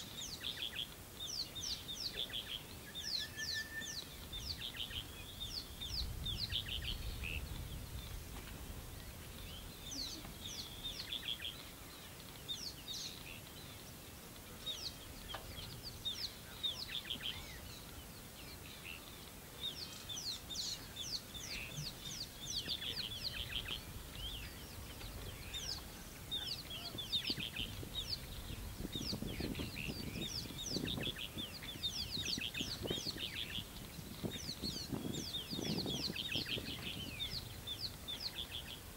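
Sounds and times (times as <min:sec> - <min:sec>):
birds chirping: 0:00.0 - 0:38.9.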